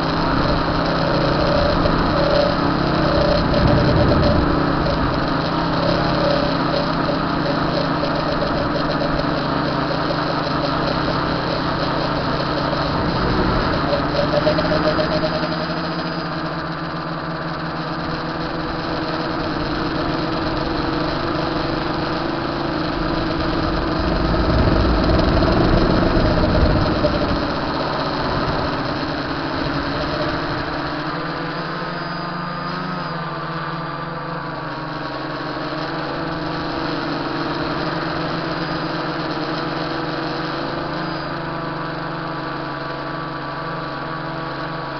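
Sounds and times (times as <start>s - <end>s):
rough rumble: 0.0s - 31.9s
drone propellers buzzing: 0.0s - 44.9s.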